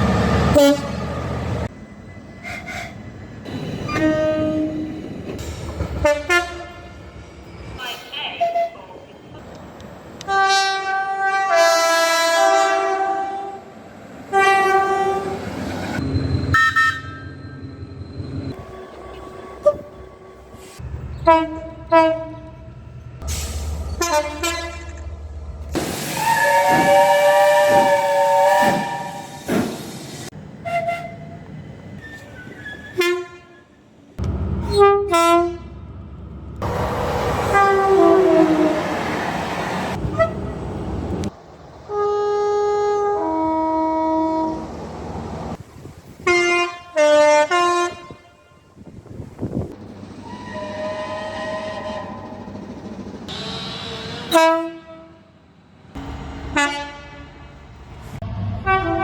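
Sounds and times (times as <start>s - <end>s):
rumble of passing train: 0.0s - 59.0s
two-tone train horns: 0.4s - 1.3s, 3.9s - 5.0s, 6.0s - 7.0s, 10.2s - 13.7s, 14.3s - 15.4s, 16.4s - 17.5s, 21.2s - 22.6s, 24.0s - 25.0s, 26.2s - 29.5s, 30.6s - 31.4s, 32.9s - 33.8s, 34.6s - 35.8s, 37.4s - 39.0s, 40.0s - 40.6s, 41.9s - 44.7s, 46.2s - 48.9s, 50.2s - 52.4s, 53.3s - 55.4s, 56.4s - 57.6s, 58.6s - 59.0s.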